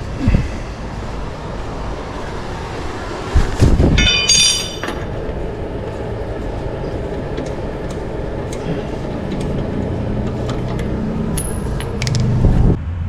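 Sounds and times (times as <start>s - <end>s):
shop work background noise: 0.0s - 12.8s
heavy clunks: 3.6s - 12.6s.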